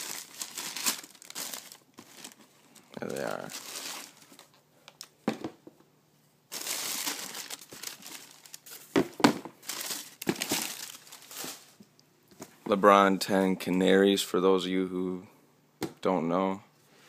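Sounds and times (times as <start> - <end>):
packing crinkling and rustling: 0.0 - 5.1, 6.5 - 9.0, 9.6 - 11.8.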